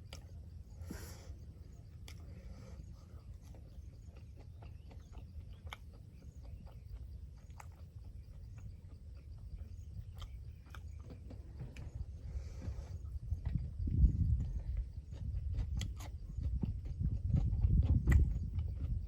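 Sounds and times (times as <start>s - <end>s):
low steady rumble: 0.0s - 19.0s
person chewing food: 0.0s - 19.0s
wet mouth clicks and smacks: 17.3s - 18.5s.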